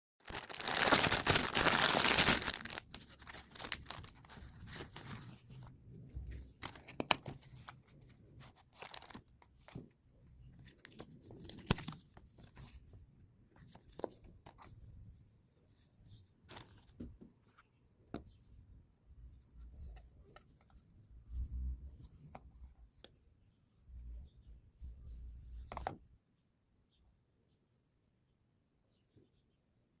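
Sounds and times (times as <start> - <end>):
wrapping tearing: 0.2 - 5.3, 8.6 - 9.2
packaging rustling and crinkling: 0.2 - 5.6, 6.2 - 9.9.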